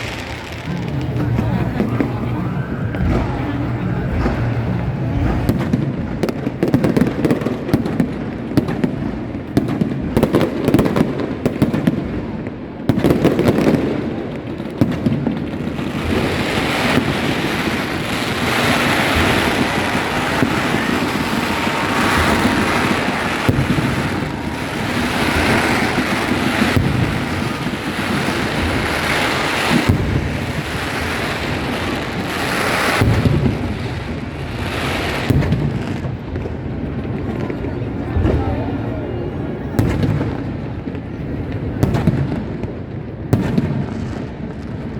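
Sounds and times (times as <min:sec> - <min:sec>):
fireworks crackling hiss: 0:00.0 - 0:11.4, 0:15.2 - 0:36.8
fireworks bangs: 0:00.0 - 0:44.9.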